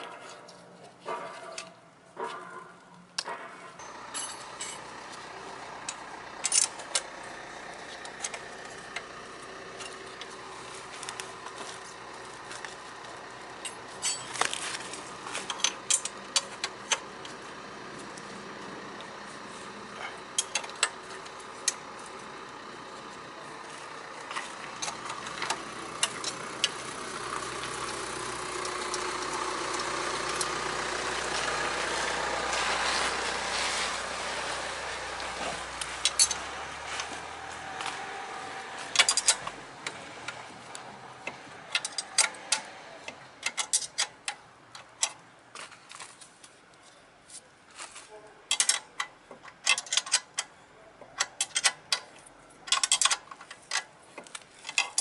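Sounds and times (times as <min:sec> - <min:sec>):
hand tools clicking and clanking: 0:00.0 - 0:55.0.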